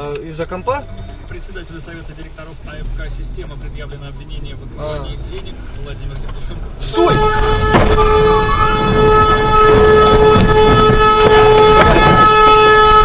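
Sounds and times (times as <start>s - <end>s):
rough rumbling noise: 0.7s - 13.0s
locomotive horn blast: 6.8s - 13.0s.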